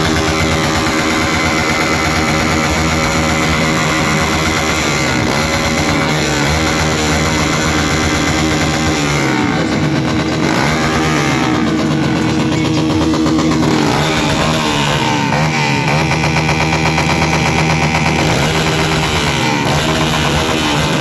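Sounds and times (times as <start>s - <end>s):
motorcycle engines revving: 0.0s - 21.0s.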